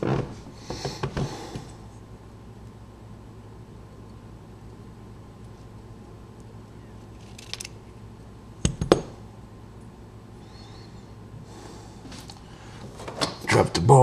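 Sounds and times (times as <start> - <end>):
metal parts scraping: 7.1 - 7.7.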